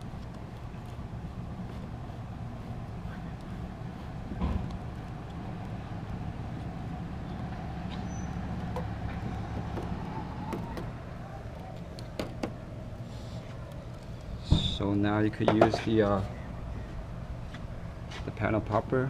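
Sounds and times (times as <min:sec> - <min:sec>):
light clicks and taps: 0:00.0 - 0:01.8
low hum and rumble: 0:00.0 - 0:19.0.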